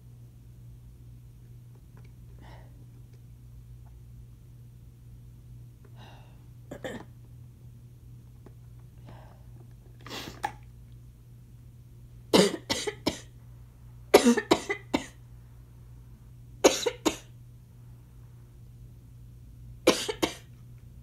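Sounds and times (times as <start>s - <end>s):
person coughing: 6.7s - 7.1s, 12.3s - 13.3s, 14.1s - 15.2s, 16.6s - 17.4s, 19.9s - 20.5s.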